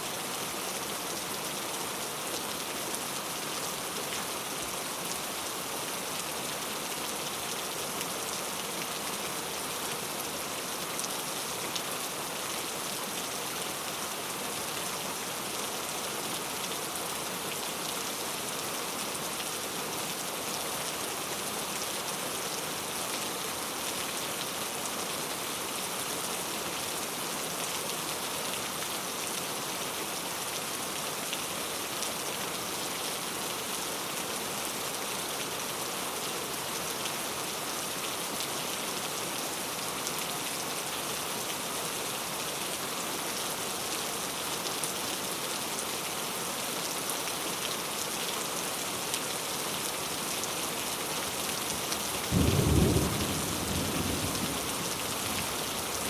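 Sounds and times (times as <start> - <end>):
heavy rain: 0.0 - 56.0
raindrops pattering on surfaces: 50.6 - 56.0.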